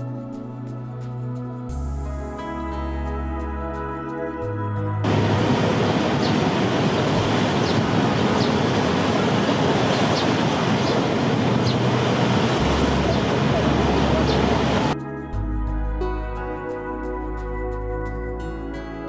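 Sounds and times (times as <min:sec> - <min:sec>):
waterfall rushing: 0:05.0 - 0:15.0.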